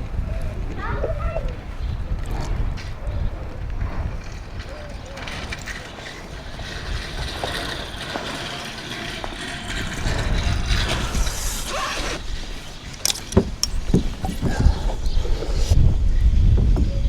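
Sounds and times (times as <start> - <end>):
wind buffeting microphone: 0.0 - 17.0
sharp clicks and knocks: 12.8 - 15.6.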